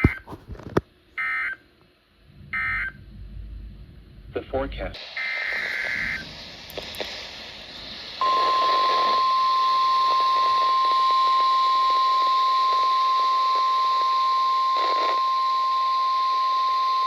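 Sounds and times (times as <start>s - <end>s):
radio static hiss: 0.0s - 0.8s, 4.4s - 17.0s
steady high alarm tone: 8.2s - 17.0s.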